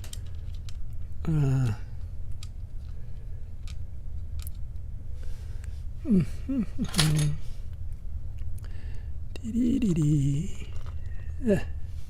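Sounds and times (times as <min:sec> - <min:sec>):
low steady hum: 0:00.0 - 0:12.0
murmured voice: 0:01.2 - 0:01.9, 0:06.0 - 0:07.4, 0:09.4 - 0:11.8.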